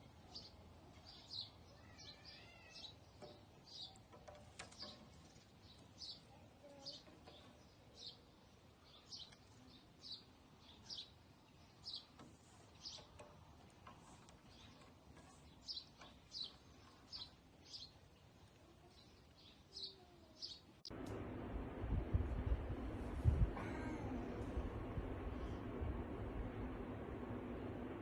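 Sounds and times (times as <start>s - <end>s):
bird chirping: 0.3s - 13.4s, 14.4s - 20.9s
loud rumbling noise: 21.0s - 28.0s.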